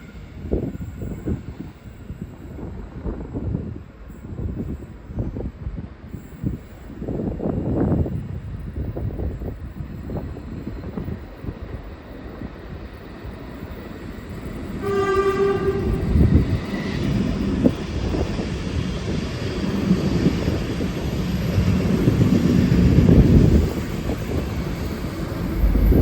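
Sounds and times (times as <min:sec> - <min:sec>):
train rumbling on rails: 0:00.0 - 0:26.0
locomotive horn blast: 0:14.8 - 0:16.2.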